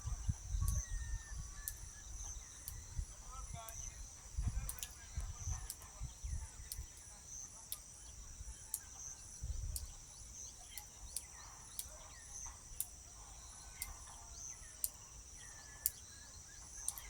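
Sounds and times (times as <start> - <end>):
faint bird calls: 0.0 - 17.0
high-pitched insect trill: 0.0 - 17.0
sharp ticks: 0.6 - 1.0, 1.6 - 1.9, 2.6 - 6.0, 6.6 - 7.1, 7.7 - 7.9, 8.6 - 8.9, 9.6 - 10.0, 10.7 - 13.0, 13.8 - 15.0, 16.7 - 17.0.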